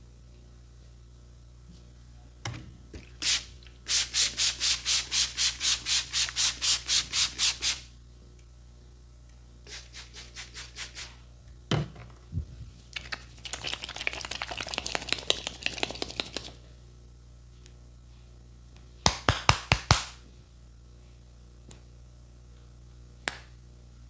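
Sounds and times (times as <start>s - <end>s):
fast hand tapping: 13.5s - 16.6s, 19.1s - 20.2s
sharp hand slaps: 19.0s - 20.2s, 23.3s - 23.5s.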